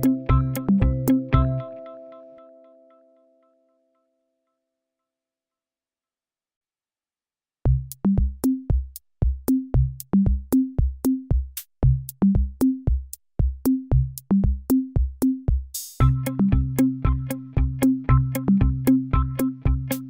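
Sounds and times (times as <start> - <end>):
electronic drum-machine beat: 0.0 - 1.6, 7.7 - 20.0.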